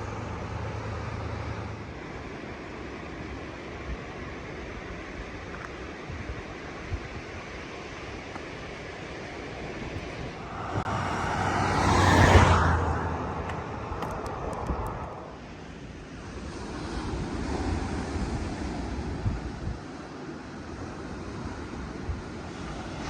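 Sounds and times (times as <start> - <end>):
wind: 0.0 - 23.0
vehicle passing by: 10.3 - 15.4.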